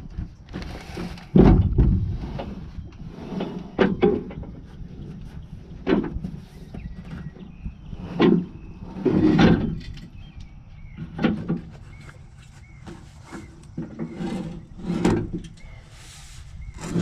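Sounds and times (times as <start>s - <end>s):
heavy clunks and knocks: 1.3s - 2.6s, 3.5s - 4.8s.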